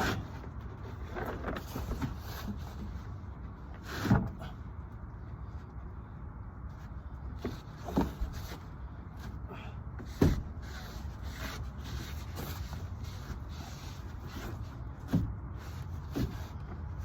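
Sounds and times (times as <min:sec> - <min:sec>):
knocks and scrapes of board: 0:03.8 - 0:04.5, 0:07.4 - 0:09.4, 0:10.0 - 0:17.0.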